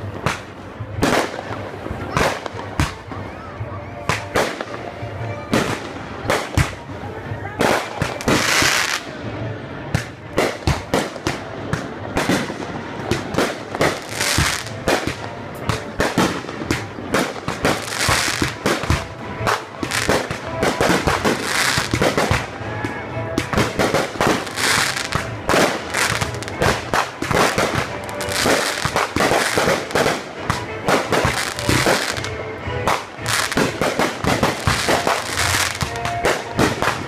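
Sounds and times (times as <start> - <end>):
fireworks crackling bursts: 0.0 - 3.4, 4.0 - 37.0
fireworks sharp bangs: 9.9 - 22.6, 23.3 - 37.0.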